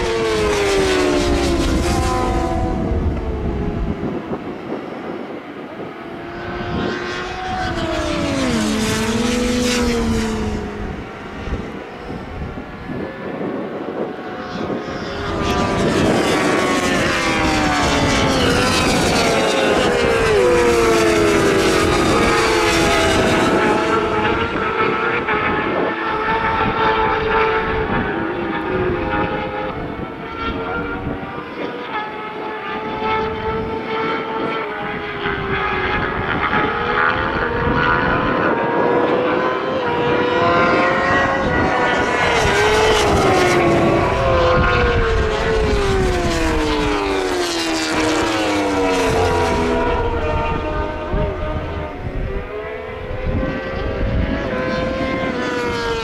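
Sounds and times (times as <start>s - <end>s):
racing motorcycles passing: 0.0s - 56.0s.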